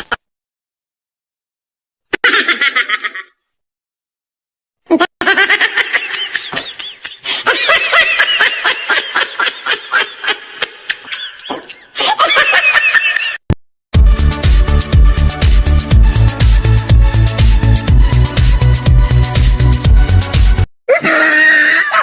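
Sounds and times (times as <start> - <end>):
voices laughing together: 5.2 - 13.4.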